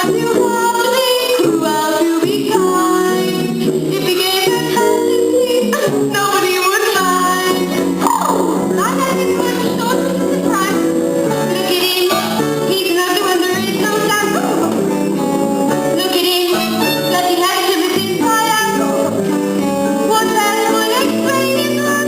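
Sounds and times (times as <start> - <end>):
instrumental accompaniment: 7.5 - 12.8.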